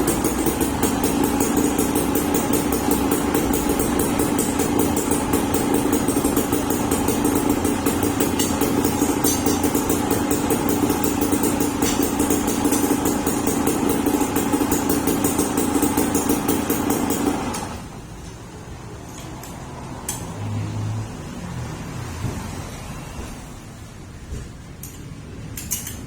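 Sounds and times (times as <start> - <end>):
engine running with fast ticking: 0.0 - 18.0.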